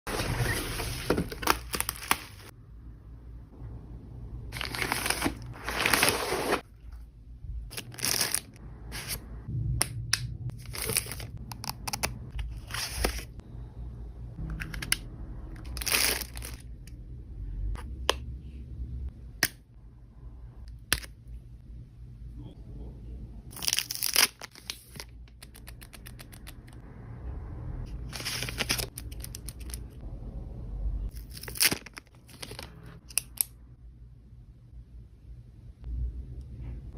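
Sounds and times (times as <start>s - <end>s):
packaging tearing: 7.7s - 9.1s, 23.6s - 26.3s.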